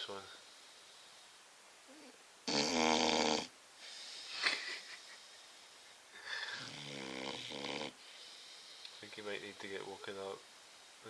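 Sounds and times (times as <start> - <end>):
dog snoring loudly: 2.0 - 3.5, 6.5 - 8.2.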